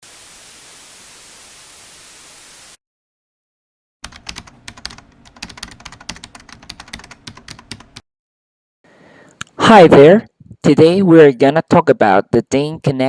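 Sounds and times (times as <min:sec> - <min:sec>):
static hiss: 0:00.0 - 0:02.8
keyboard typing clicks: 0:04.0 - 0:08.0.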